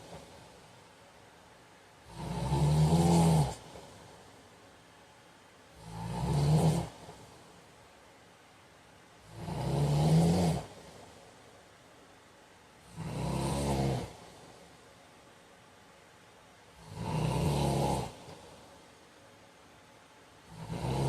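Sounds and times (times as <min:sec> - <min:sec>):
man snoring: 0:02.0 - 0:03.9, 0:05.7 - 0:07.4, 0:09.2 - 0:11.1, 0:12.8 - 0:14.6, 0:16.8 - 0:18.6, 0:20.4 - 0:21.0.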